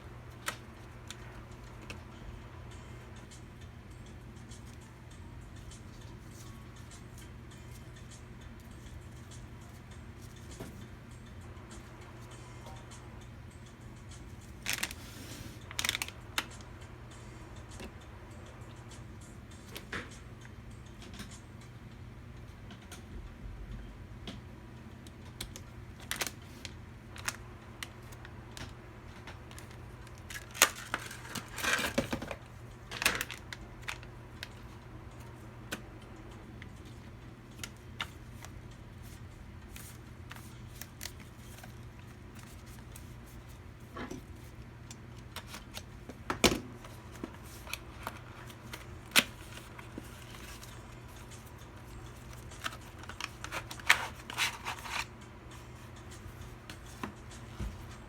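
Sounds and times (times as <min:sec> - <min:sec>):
packaging rustling: 0:46.8 - 0:55.1.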